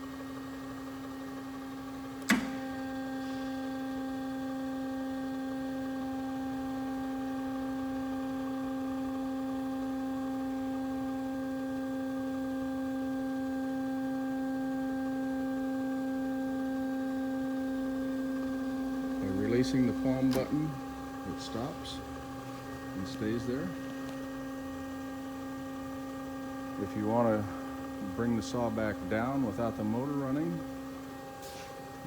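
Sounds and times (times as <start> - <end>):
hydraulic pump motor humming: 0.0 - 11.2, 12.5 - 32.0
sharp click: 2.2 - 2.6, 20.2 - 20.7.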